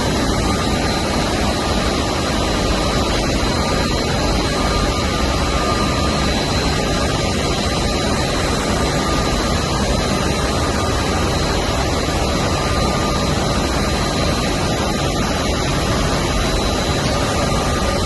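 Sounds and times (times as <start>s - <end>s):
faint high whines: 0.0s - 18.0s
loud mechanical machine noise: 0.0s - 18.0s.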